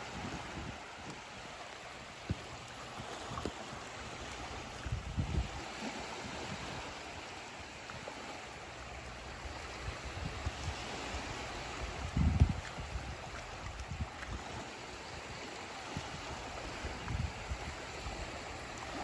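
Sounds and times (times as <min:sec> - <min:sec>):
rushing water: 0:00.0 - 0:19.0
wind thumps on microphone: 0:02.2 - 0:03.8, 0:04.6 - 0:05.7, 0:09.8 - 0:14.5, 0:16.0 - 0:17.9.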